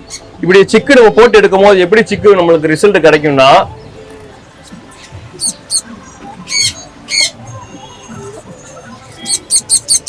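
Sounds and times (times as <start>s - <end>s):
finches calling: 4.6s - 10.0s.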